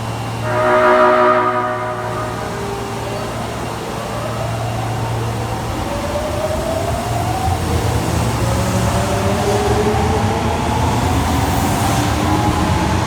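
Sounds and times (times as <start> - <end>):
train motor whine rising in pitch: 0.1 - 6.6
train warning horn: 0.3 - 4.6.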